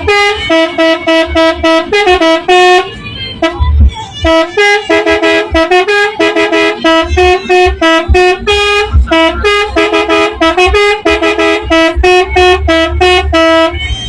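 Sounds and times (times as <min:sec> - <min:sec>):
multi-tone air horn melody: 0:00.0 - 0:14.0
low thuds: 0:07.0 - 0:13.3.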